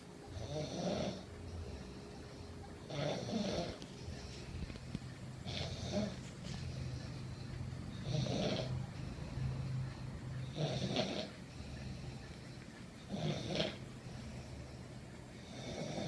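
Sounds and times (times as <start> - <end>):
person snoring: 0.3 - 1.3, 2.9 - 3.8, 5.4 - 6.2, 8.0 - 9.5, 10.5 - 12.3, 13.1 - 14.6, 15.4 - 16.0.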